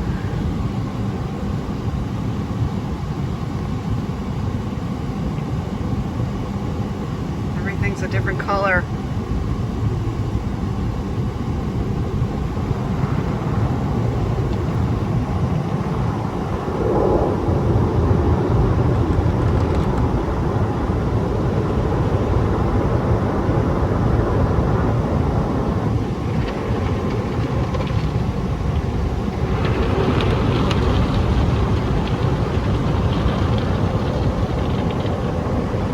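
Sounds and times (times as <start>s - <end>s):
car wash spray and machinery: 9.6s - 35.9s.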